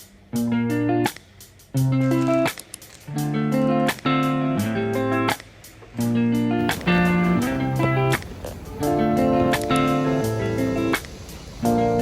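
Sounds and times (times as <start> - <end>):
strummed guitar chords: 3.1 - 12.0.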